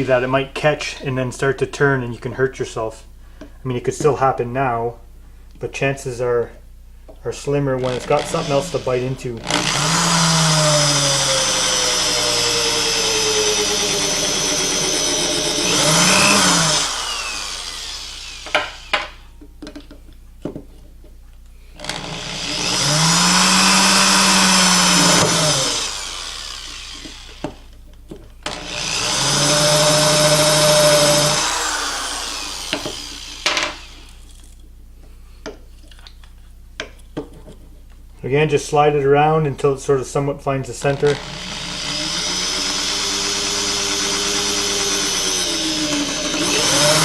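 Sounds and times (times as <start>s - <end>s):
power drill boring through plastic: 7.8s - 19.2s, 21.8s - 27.7s, 28.4s - 34.4s, 40.8s - 47.0s.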